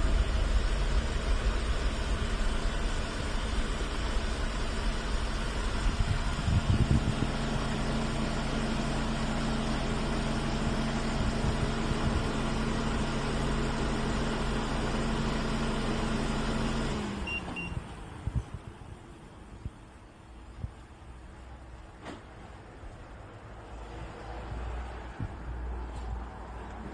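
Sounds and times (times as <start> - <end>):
diesel engine idling: 0.0 - 21.9.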